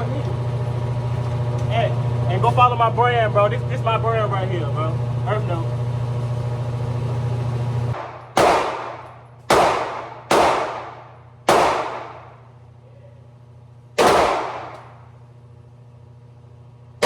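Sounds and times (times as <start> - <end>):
gunshots echoing: 8.0 - 12.4, 14.0 - 15.0.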